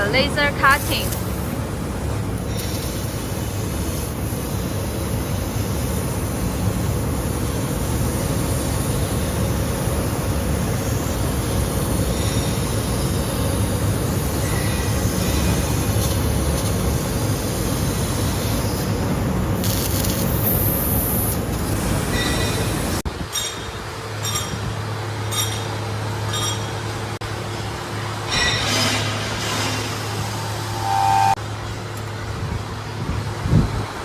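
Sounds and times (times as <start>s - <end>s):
laser cutting machine humming: 29.4s - 31.4s.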